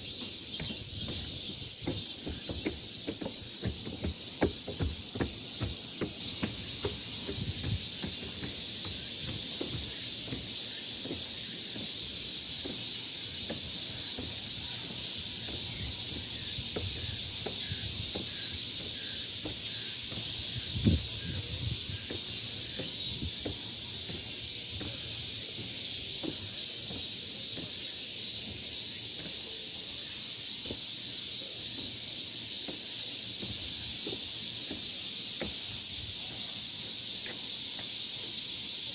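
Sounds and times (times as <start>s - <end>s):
insects buzzing: 0.0s - 38.9s
soft knocks: 0.2s - 12.0s.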